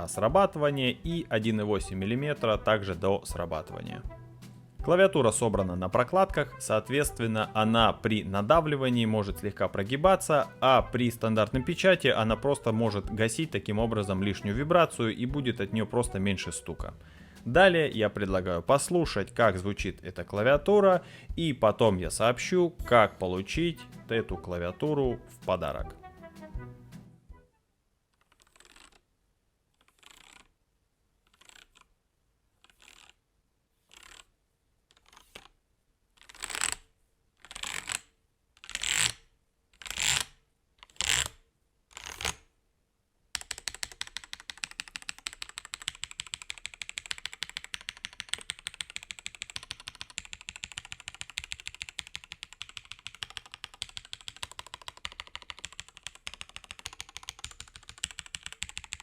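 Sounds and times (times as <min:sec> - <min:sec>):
mechanical keyboard typing: 0:43.4 - 0:59.0.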